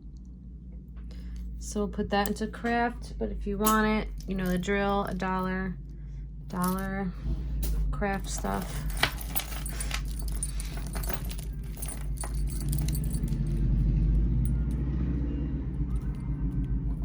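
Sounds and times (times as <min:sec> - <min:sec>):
steady low hum: 0:00.0 - 0:17.0
jewelry and beads clinking: 0:02.2 - 0:05.6, 0:06.5 - 0:06.9, 0:07.6 - 0:15.0.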